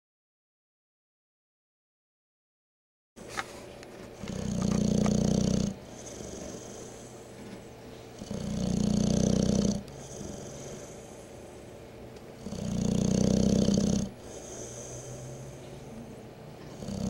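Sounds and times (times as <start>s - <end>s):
dog breathing: 4.1s - 17.0s
dog snoring: 4.2s - 11.8s, 12.4s - 17.0s.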